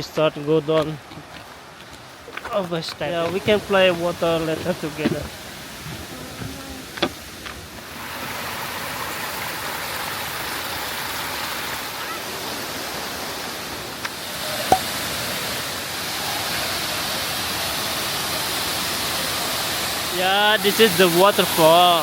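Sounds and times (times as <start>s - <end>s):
waterfall rushing: 2.6s - 22.0s
sharp knock: 14.7s - 14.9s.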